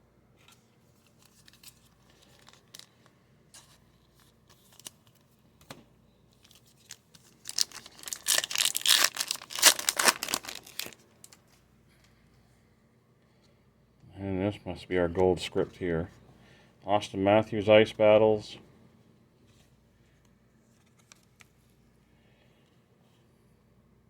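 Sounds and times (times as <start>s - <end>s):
plastic wrapper tearing and crinkling: 1.2s - 2.9s, 6.4s - 11.4s.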